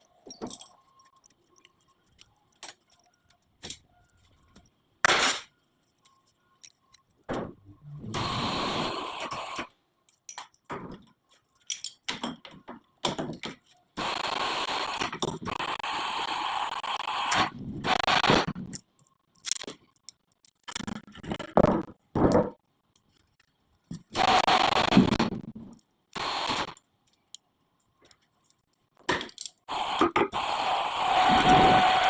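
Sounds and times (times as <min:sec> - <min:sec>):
metallic clinks and knocks: 0:00.0 - 0:04.6, 0:27.1 - 0:29.6.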